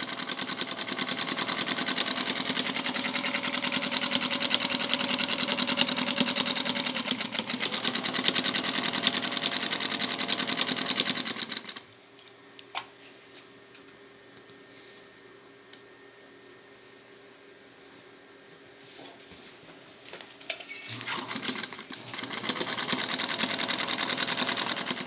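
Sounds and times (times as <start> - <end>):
sewing machine clatter: 0.0 - 11.8, 20.9 - 25.0.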